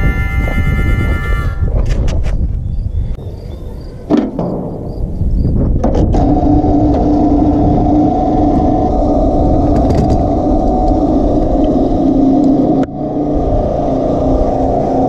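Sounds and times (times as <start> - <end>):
machinery engine running: 6.1 - 15.0.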